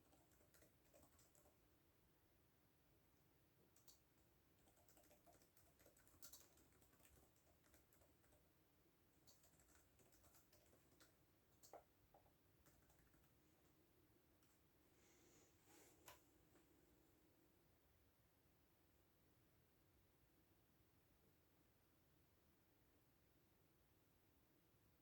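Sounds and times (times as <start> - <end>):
typing on computer keyboard: 0.0 - 1.6, 3.7 - 8.5, 9.2 - 13.4.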